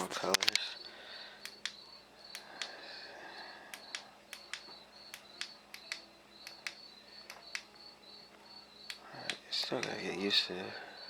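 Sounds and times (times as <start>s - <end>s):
cricket chirping: 0.0s - 11.0s
remote button clicks: 3.8s - 7.7s.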